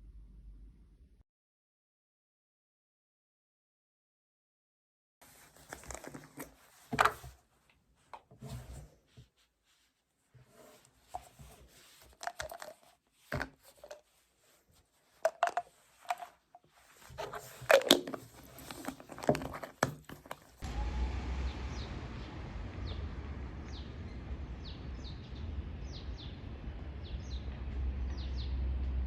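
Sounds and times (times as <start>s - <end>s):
rustling and crinkling: 5.2s - 20.6s.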